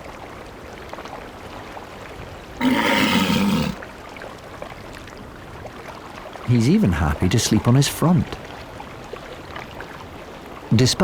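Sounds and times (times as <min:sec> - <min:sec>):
walrus snore: 0:02.6 - 0:03.8.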